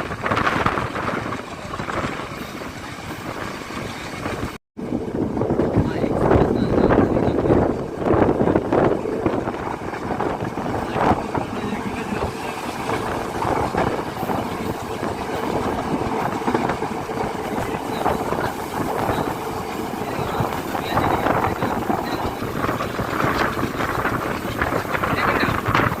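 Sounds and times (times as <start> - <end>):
train carriage rumble and rattle: 0.0 - 26.0
train knocks: 5.7 - 26.0.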